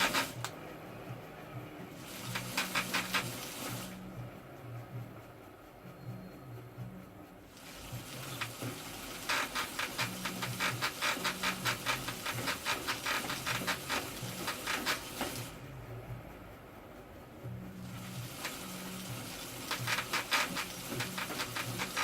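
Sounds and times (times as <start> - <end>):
rushing hiss: 0.0 - 0.5, 1.9 - 4.1, 7.5 - 15.6, 17.8 - 22.0
spinning bicycle wheel ticking: 0.0 - 0.5, 2.0 - 4.1, 7.5 - 15.8, 17.7 - 22.0.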